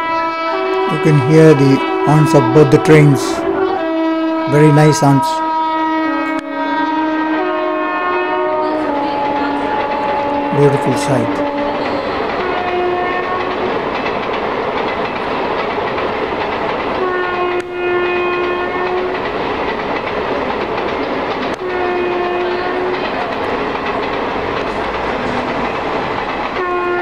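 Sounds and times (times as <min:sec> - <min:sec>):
locomotive horn blasts: 0:00.0 - 0:14.0, 0:17.0 - 0:19.5, 0:21.5 - 0:27.0
train wheels clattering on track: 0:08.2 - 0:27.0.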